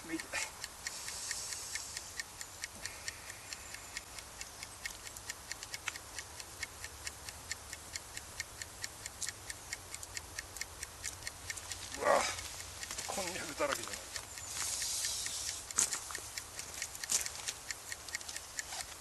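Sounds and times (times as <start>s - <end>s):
campfire crackling: 8.8s - 19.0s.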